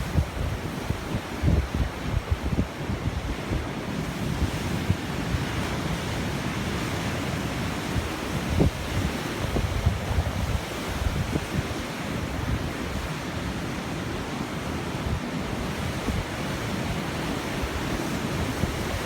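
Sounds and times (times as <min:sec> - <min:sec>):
wind buffeting microphone: 0:00.0 - 0:06.8, 0:07.7 - 0:13.1
rough sea surf washing: 0:00.0 - 0:19.0.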